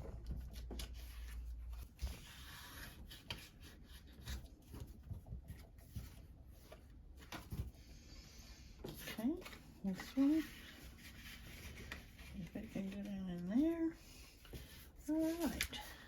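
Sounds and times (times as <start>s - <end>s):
paper rustling and sliding: 8.8s - 16.0s.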